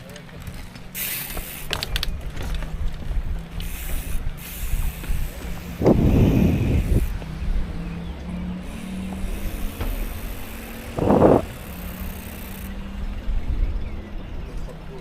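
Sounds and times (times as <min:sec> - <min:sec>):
car engine humming: 0:04.9 - 0:14.5
loud rough engine rumble: 0:05.4 - 0:15.0.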